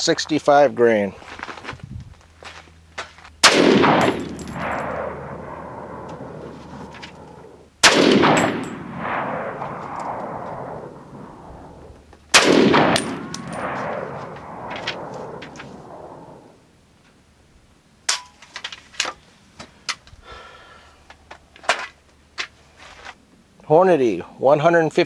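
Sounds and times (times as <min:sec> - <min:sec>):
rifle shots with echo: 0:03.4 - 0:16.5.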